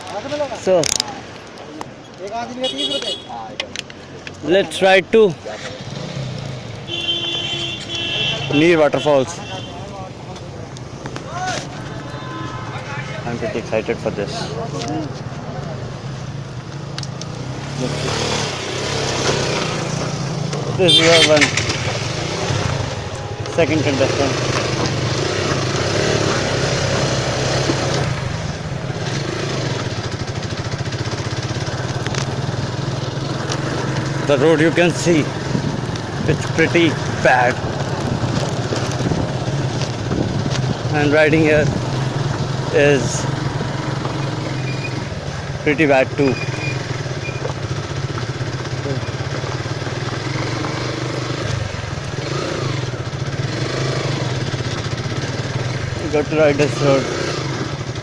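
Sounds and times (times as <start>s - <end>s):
motorcycle engine running: 4.5s - 58.0s.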